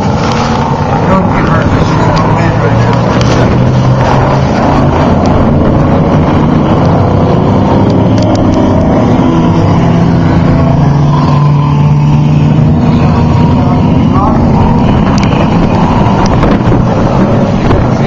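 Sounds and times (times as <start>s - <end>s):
truck engines droning: 0.0s - 18.0s.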